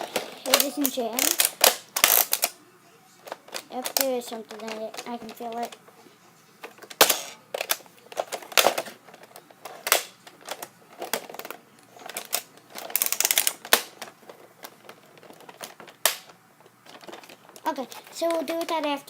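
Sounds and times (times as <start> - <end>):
plastic toy blaster clicking: 0.0 - 2.6, 9.8 - 14.1
toy blaster mechanism rattling: 0.0 - 2.6, 3.2 - 5.8, 6.7 - 18.9.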